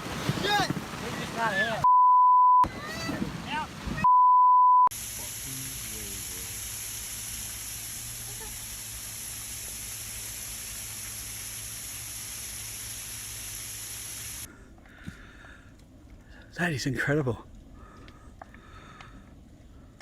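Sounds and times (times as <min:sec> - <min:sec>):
heavy rain hissing: 0:04.9 - 0:14.5.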